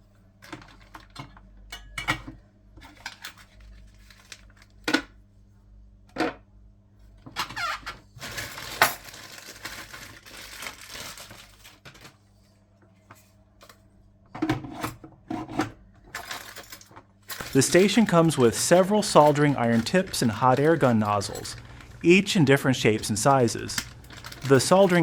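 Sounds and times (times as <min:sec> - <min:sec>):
packaging rustling: 0:03.0 - 0:04.8, 0:07.6 - 0:12.2, 0:16.2 - 0:25.0
hard parts knocking and clattering: 0:15.6 - 0:22.0, 0:22.8 - 0:25.0.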